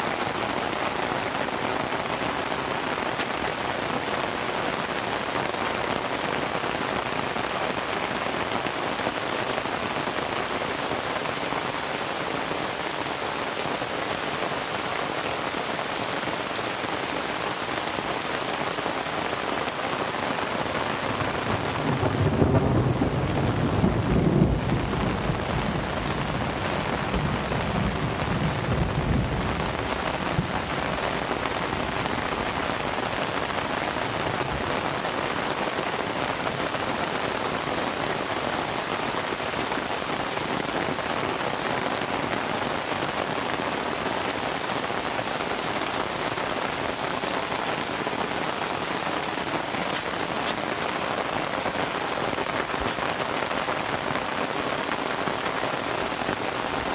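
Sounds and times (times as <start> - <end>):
heavy rain pouring: 0.0 - 56.9
thunder rumbling: 21.1 - 33.5.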